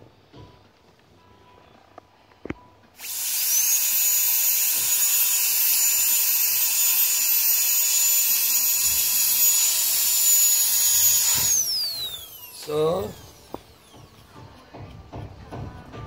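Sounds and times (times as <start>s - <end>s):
dental drill whining: 3.0s - 14.4s.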